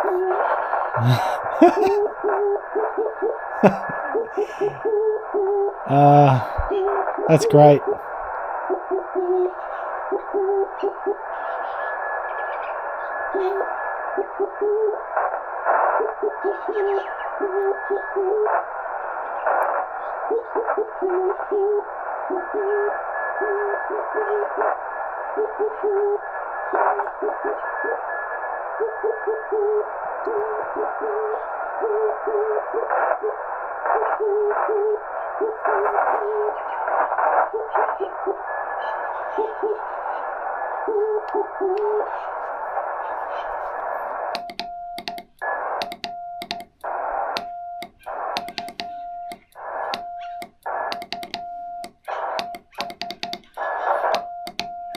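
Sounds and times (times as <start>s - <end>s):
receiver hiss: 0.0s - 2.0s, 3.5s - 11.3s, 40.4s - 54.9s
morse code beeps: 44.4s - 54.9s.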